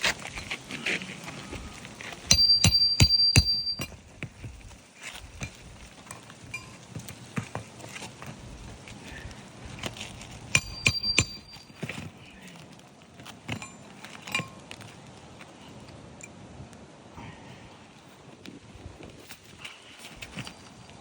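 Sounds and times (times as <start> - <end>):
hammer striking nails: 2.3 - 4.0, 10.6 - 11.7.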